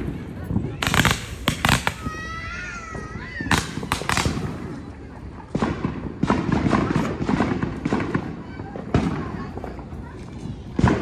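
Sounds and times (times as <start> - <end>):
firework whistle: 0.8 - 2.6, 3.5 - 4.8
firework crackling: 0.8 - 2.8, 3.5 - 5.1
firework bangs: 0.8 - 8.3.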